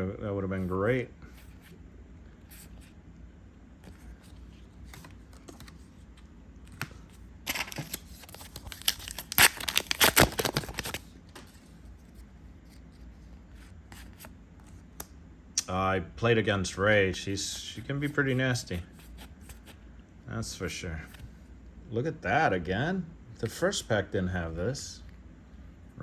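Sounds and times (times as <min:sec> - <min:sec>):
foil wrapper tearing: 0:07.5 - 0:11.1.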